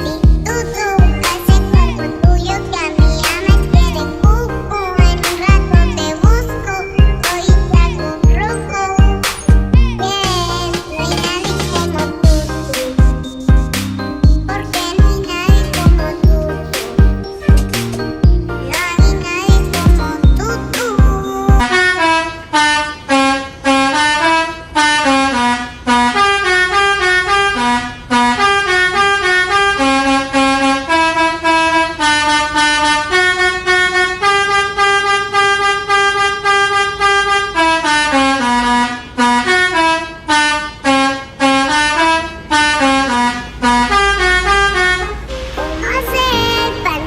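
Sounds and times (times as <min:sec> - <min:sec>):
bus musical air horn melody: 0:00.0 - 0:47.0.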